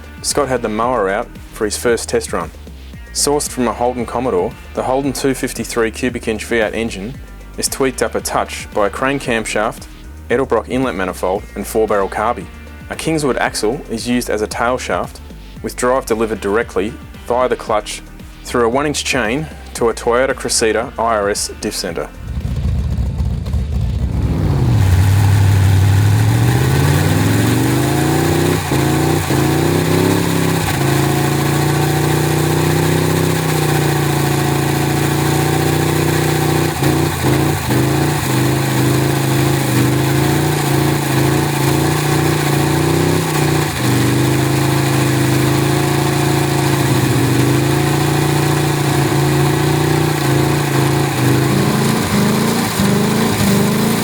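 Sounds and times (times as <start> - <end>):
engine revving: 0.0 - 12.3, 21.6 - 54.0
engine pops: 21.8 - 54.0.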